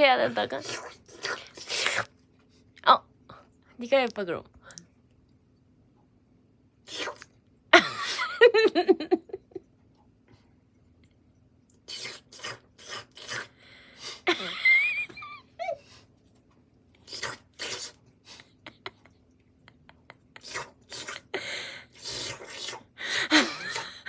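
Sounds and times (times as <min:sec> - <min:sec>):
person making spitting mouth noises: 0:00.6 - 0:02.1, 0:06.9 - 0:07.4, 0:11.9 - 0:13.5, 0:17.0 - 0:18.0, 0:20.4 - 0:21.3, 0:22.0 - 0:22.9.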